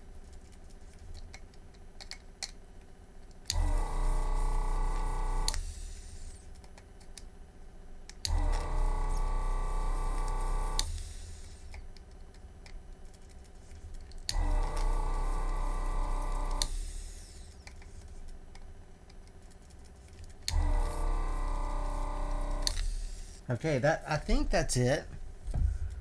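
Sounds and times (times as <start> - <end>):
vacuum pump humming: 3.5 - 6.2, 8.2 - 11.6, 14.3 - 17.6, 20.5 - 23.5.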